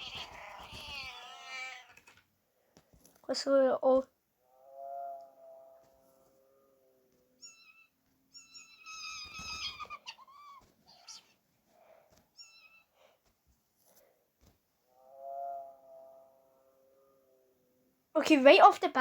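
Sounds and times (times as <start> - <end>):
high-pitched chirping cat meows: 0.0 - 2.1, 7.4 - 11.4, 12.4 - 12.9
rough cat cry: 0.0 - 2.2, 7.4 - 11.4.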